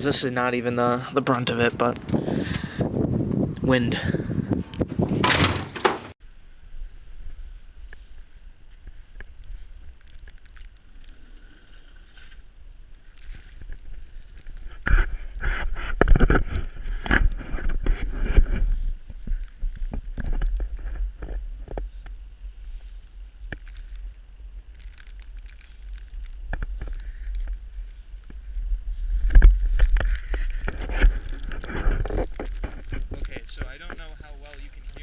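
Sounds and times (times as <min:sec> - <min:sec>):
wind buffeting microphone: 0:01.4 - 0:06.1.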